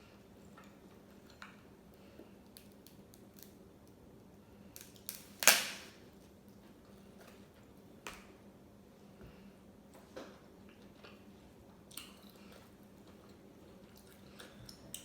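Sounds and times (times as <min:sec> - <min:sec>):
crab shell cracking: 0:02.5 - 0:04.0.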